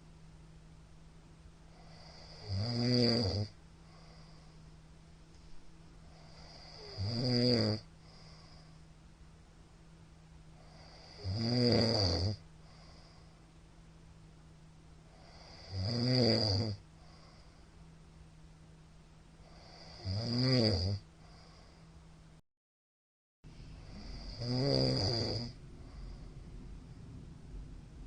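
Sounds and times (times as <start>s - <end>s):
faint steady hum: 0.0s - 22.4s, 23.4s - 28.0s
quiet breathing: 1.5s - 2.6s, 3.4s - 9.3s, 10.4s - 11.4s, 12.3s - 13.9s, 14.9s - 15.8s, 16.8s - 18.2s, 19.2s - 20.1s, 21.0s - 22.4s, 23.5s - 28.0s
man snoring loudly: 1.7s - 4.3s, 6.1s - 8.5s, 10.6s - 12.4s, 15.1s - 16.8s, 19.4s - 21.1s, 23.8s - 26.2s.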